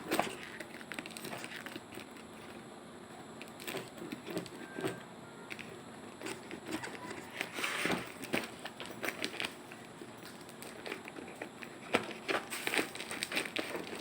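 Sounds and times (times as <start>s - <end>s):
packaging taps and rustles: 3.4s - 14.0s.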